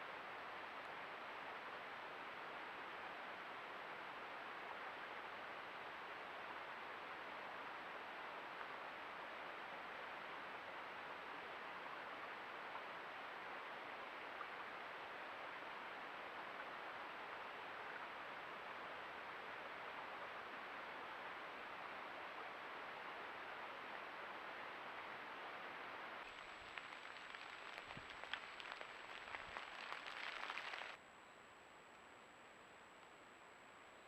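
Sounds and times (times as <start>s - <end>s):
stream rushing: 0.0s - 31.0s.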